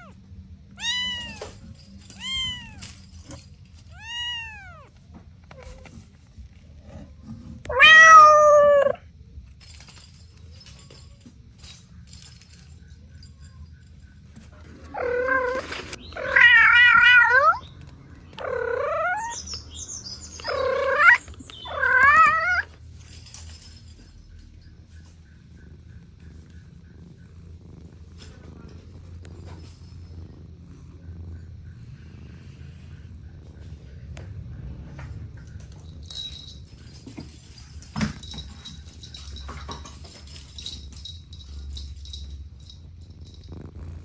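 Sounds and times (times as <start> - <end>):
cat meowing: 0.8 - 3.0, 3.9 - 5.8, 7.7 - 9.0, 14.9 - 17.6, 18.4 - 19.4, 20.4 - 22.7.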